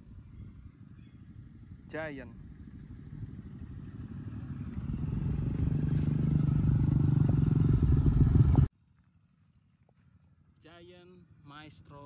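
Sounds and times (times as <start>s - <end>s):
vehicle engine running: 0.0s - 8.7s.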